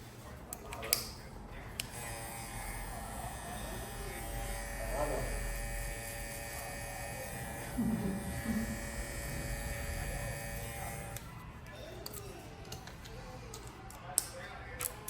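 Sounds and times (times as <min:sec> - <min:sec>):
hair clipper running: 0:01.8 - 0:11.2.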